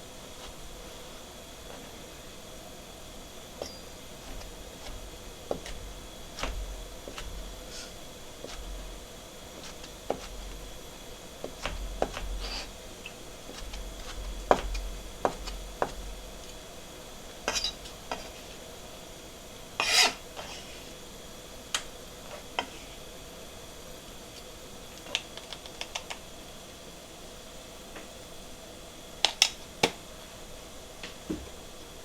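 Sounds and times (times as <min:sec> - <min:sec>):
utensils clinking against dishes: 0:17.5 - 0:18.3.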